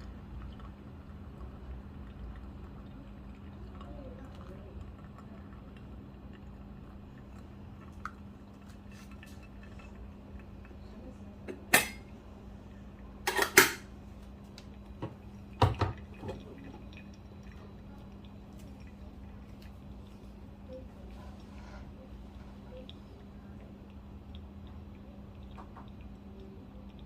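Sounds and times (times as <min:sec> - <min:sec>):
steady low hum: 0:00.0 - 0:27.0
kitchenware clinking: 0:11.5 - 0:12.1, 0:13.2 - 0:13.9.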